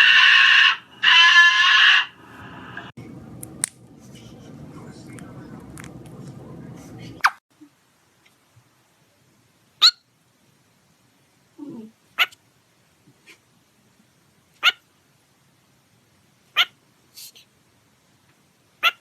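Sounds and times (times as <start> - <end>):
parrot calls: 0.0 - 2.9, 9.8 - 10.1, 12.2 - 12.4, 14.6 - 14.9, 16.6 - 16.8, 18.8 - 19.0
soft low sound: 2.4 - 7.3.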